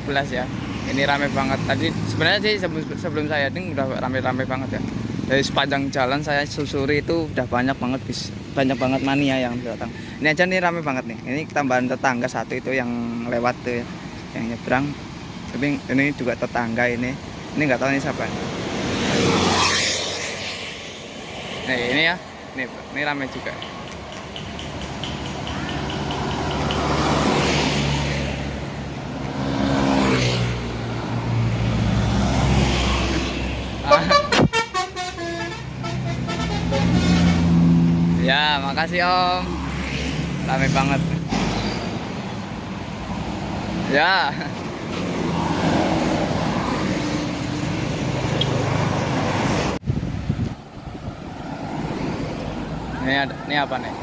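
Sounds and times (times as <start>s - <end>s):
traffic engines droning: 0.0s - 54.0s
vehicle passing by: 17.8s - 22.2s, 23.4s - 33.9s, 35.8s - 54.0s
bus engine humming: 21.8s - 29.8s, 30.6s - 39.6s.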